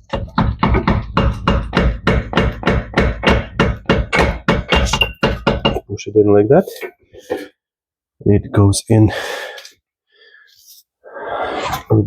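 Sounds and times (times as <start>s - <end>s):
rapid metal knocking: 0.0s - 5.8s.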